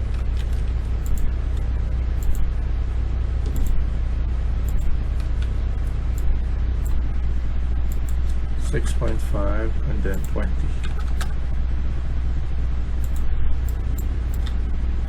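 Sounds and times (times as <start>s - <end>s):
low electrical hum: 0.0s - 15.0s
computer mouse clicks: 0.4s - 1.3s, 2.2s - 2.5s, 3.5s - 3.8s, 4.7s - 5.0s, 5.9s - 7.0s, 7.9s - 8.3s, 10.1s - 10.4s, 13.0s - 14.6s.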